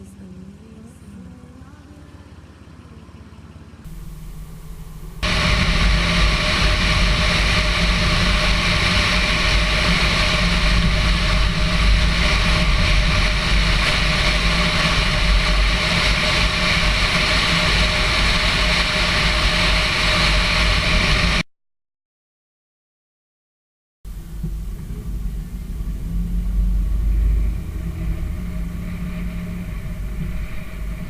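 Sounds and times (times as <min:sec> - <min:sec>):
car engine rumble: 0:00.0 - 0:21.4, 0:24.1 - 0:31.0
wind and road noise: 0:03.5 - 0:21.4, 0:24.1 - 0:31.0.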